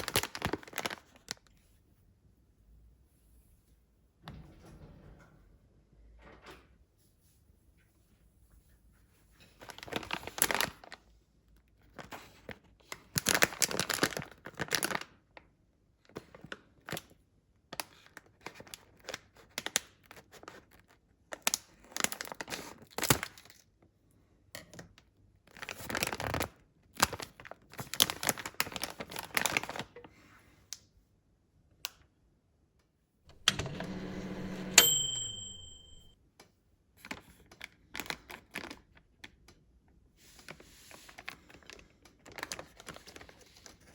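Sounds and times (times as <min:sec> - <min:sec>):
wrapping crinkling and tearing: 0:00.0 - 0:01.4, 0:13.1 - 0:15.0, 0:25.6 - 0:29.8, 0:41.1 - 0:43.9
microwave click: 0:33.3 - 0:36.1
microwave oven humming: 0:33.3 - 0:36.1.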